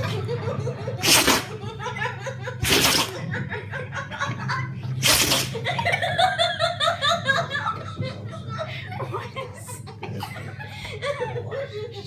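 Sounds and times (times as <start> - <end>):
people laughing: 0.0 - 12.0
dog sneezing: 1.0 - 1.6, 2.6 - 3.2, 5.0 - 5.6.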